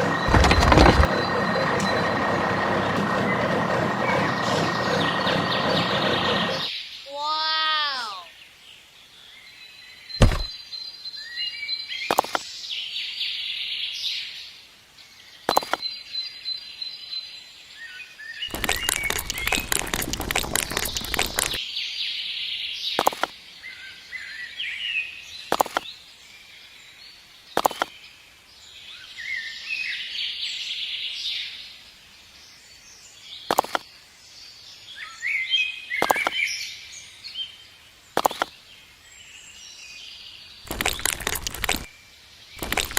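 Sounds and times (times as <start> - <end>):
dense clatter: 0.0 - 5.6
birds chirping and trilling: 0.0 - 14.5, 15.2 - 42.9
sharp knocks: 10.2 - 10.5.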